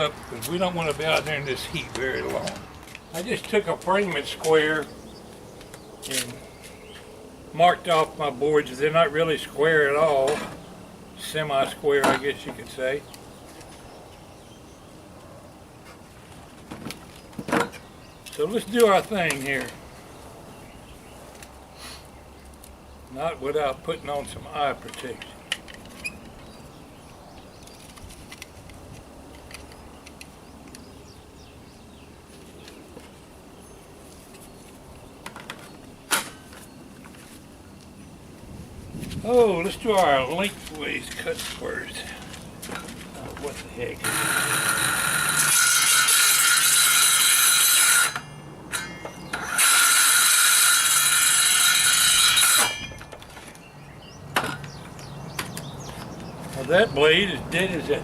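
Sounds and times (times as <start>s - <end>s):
birds chirping: 0.0s - 45.4s, 48.1s - 49.7s, 52.7s - 58.0s
circular saw ripping wood: 43.4s - 53.6s.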